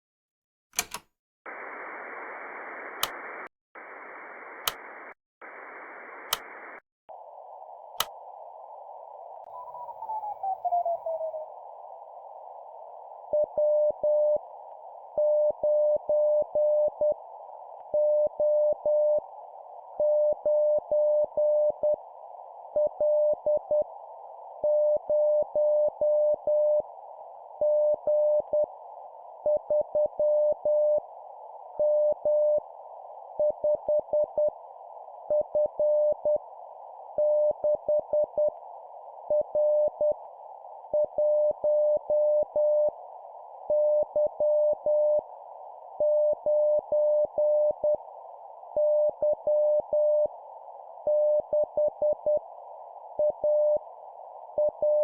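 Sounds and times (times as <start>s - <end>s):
sharp clicks: 0.7s - 1.1s, 2.9s - 3.3s, 4.6s - 5.0s
radio static bursts: 1.5s - 6.8s
radio hiss: 1.5s - 13.4s.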